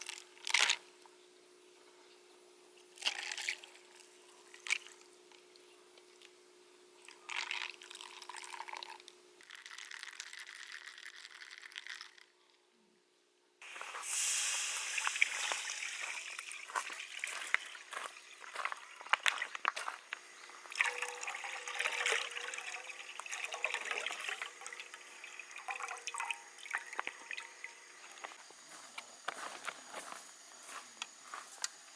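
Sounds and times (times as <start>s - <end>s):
water running and splashing: 13.6s - 19.8s, 20.6s - 28.4s.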